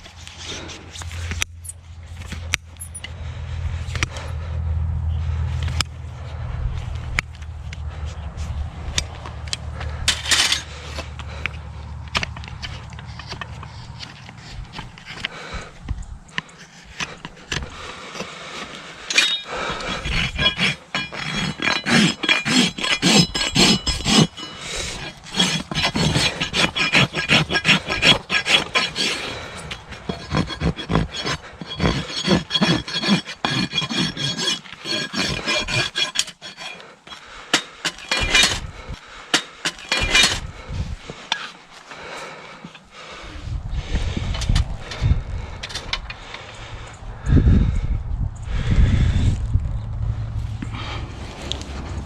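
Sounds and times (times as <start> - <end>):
rasp filing a hoof: 0.0 - 4.5, 9.8 - 43.3.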